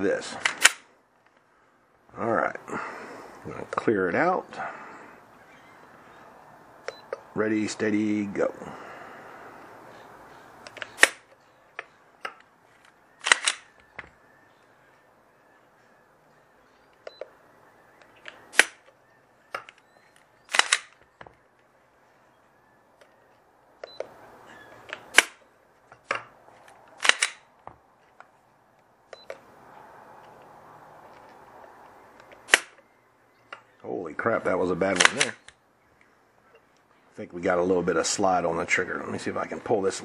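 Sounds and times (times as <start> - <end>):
faint clicks of gun handling: 0.4 - 1.5, 10.6 - 14.2, 24.8 - 29.5, 30.2 - 32.9
pistol dry-fire clicks: 10.6 - 12.5, 13.2 - 13.9, 18.0 - 19.9, 20.5 - 21.1, 26.9 - 27.5, 32.2 - 32.8, 34.9 - 35.6.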